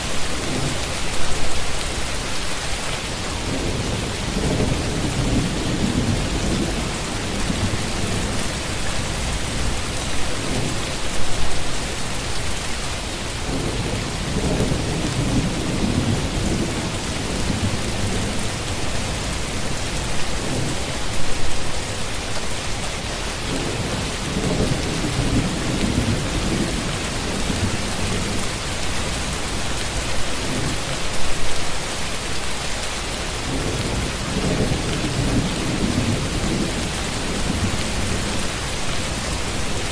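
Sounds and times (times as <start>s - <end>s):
heavy rain hissing: 0.0s - 39.9s
thunder rumbling: 3.4s - 12.0s, 23.5s - 30.9s.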